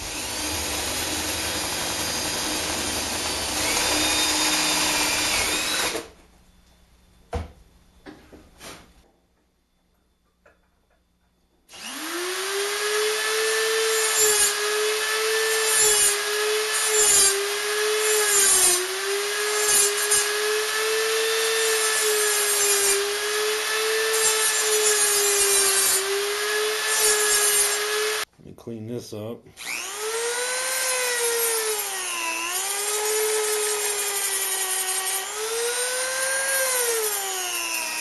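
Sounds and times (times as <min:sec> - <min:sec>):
power tool whining: 0:00.0 - 0:06.1, 0:11.7 - 0:28.3, 0:29.6 - 0:38.0.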